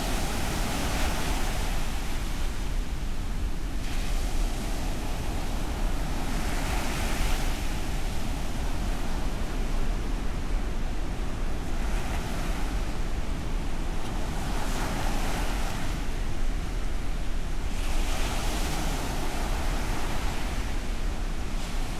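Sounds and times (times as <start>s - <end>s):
waves breaking: 0.0s - 9.4s
wind on microphone: 0.0s - 21.9s.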